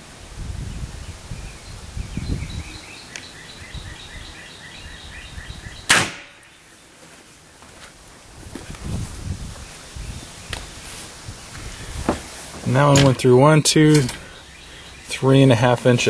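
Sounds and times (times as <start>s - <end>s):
air rifle shot crack: 5.9s - 6.4s
rustling handling noise: 6.8s - 13.3s.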